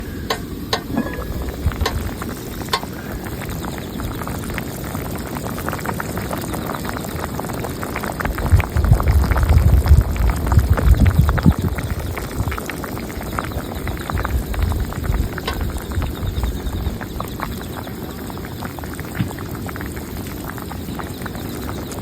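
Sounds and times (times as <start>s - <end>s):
low rumble: 0.0s - 2.6s
hot pot bubbling: 0.0s - 22.0s.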